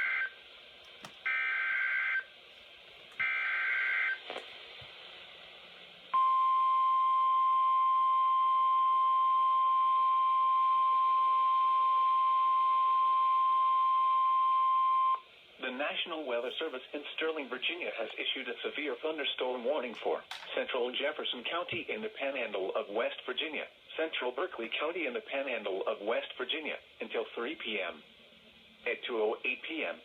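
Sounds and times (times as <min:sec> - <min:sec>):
steady warning alarm tone: 0:00.0 - 0:00.4, 0:01.3 - 0:02.3, 0:03.2 - 0:04.2.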